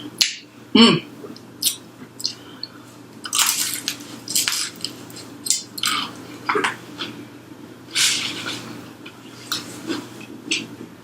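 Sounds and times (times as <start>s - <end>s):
person chewing crunchy food: 3.2s - 7.2s.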